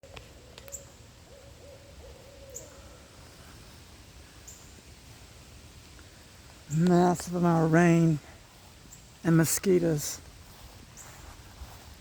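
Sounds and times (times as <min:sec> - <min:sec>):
owl hooting: 0:00.5 - 0:03.1.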